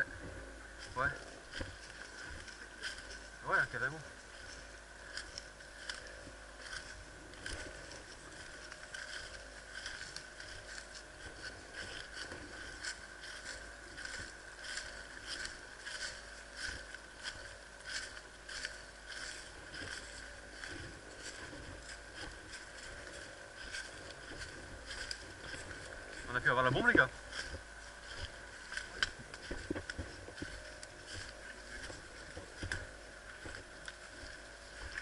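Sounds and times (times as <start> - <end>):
faint high hum: 0.0 - 35.0
footsteps crunching: 0.0 - 35.0
clothing and gear rustling: 4.2 - 35.0.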